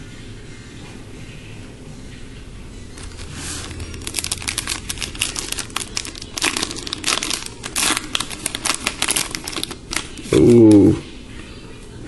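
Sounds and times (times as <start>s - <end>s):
wrapper tearing and crinkling: 3.0s - 10.8s.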